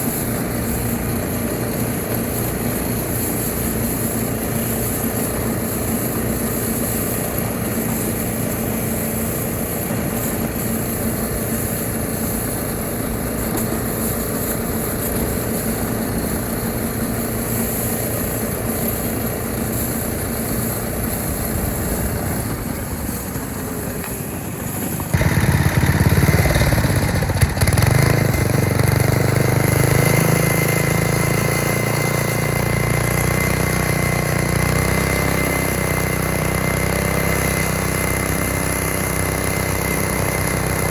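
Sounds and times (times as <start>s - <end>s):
close engine running: 0.0s - 40.9s
small engines running: 0.0s - 40.9s.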